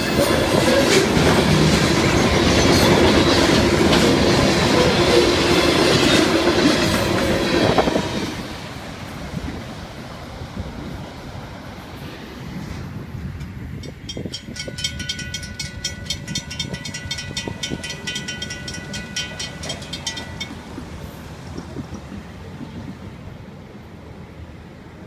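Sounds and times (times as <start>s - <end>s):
freight train rumbling past: 0.0s - 25.0s.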